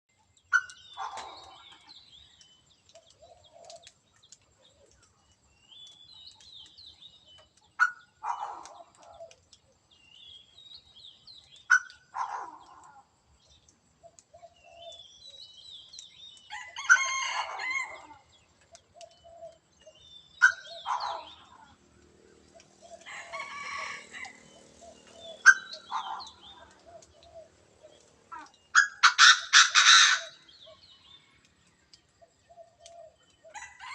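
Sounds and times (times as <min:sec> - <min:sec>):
small birds chirping: 0:00.1 - 0:33.9
quail calling: 0:11.7 - 0:12.9, 0:20.4 - 0:21.7, 0:22.9 - 0:27.5, 0:28.3 - 0:30.4.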